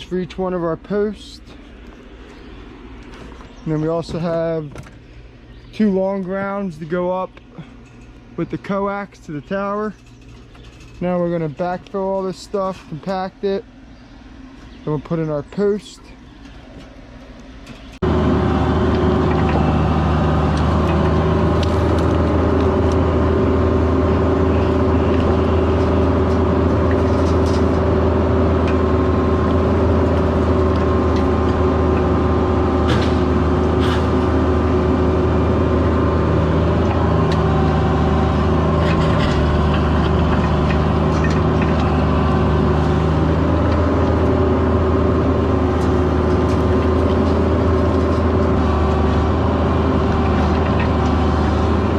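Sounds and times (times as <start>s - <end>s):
excavator diesel engine running: 16.5s - 51.9s.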